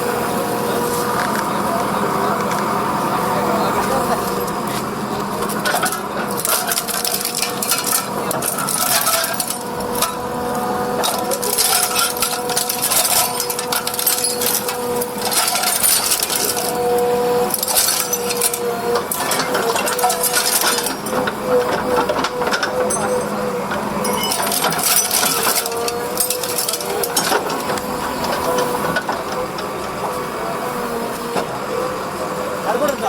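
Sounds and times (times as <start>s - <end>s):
metal crunching and cracking: 5.4s - 10.3s, 11.0s - 30.0s.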